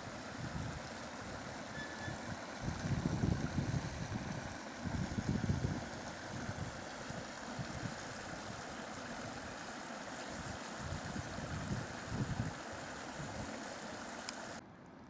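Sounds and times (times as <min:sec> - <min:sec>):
wind buffeting microphone: 0:02.6 - 0:06.8, 0:10.8 - 0:12.6
steady rushing hiss: 0:05.9 - 0:14.6.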